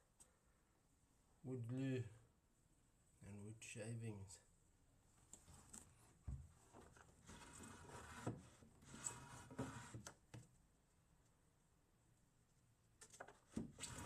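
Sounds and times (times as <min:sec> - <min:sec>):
soft rustling and scraping: 0:05.1 - 0:10.1.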